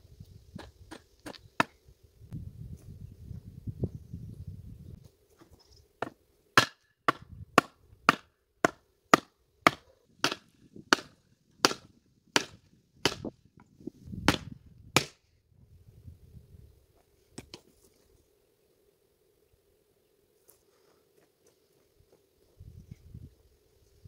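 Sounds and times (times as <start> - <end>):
tool striking wood: 6.0 - 13.3.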